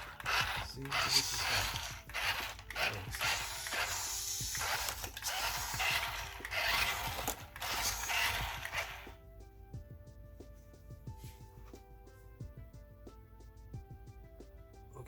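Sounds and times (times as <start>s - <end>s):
toy car motor whirring: 0.0s - 9.2s
music: 0.0s - 15.0s.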